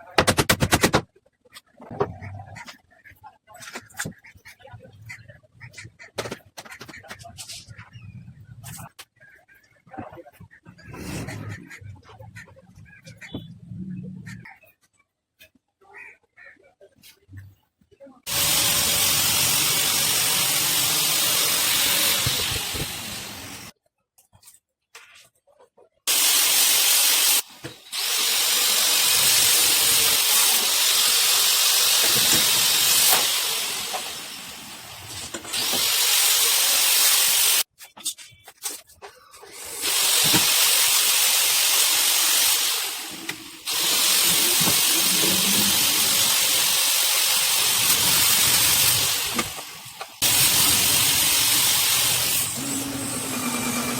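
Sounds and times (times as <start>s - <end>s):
spray gun hissing: 18.3s - 23.7s, 26.1s - 37.6s, 39.9s - 43.0s, 43.7s - 49.5s, 50.2s - 53.7s.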